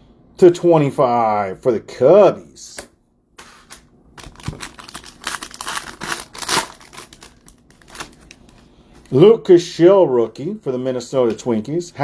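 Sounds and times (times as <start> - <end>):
wrapper crinkling and tearing: 4.2 - 8.6.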